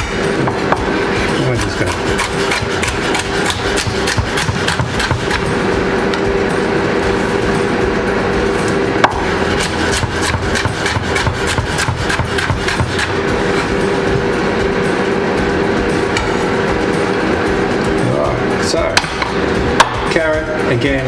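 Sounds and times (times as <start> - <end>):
knife chopping on cutting board: 0.0 - 5.5, 9.0 - 14.3
air fryer hum: 0.0 - 21.0.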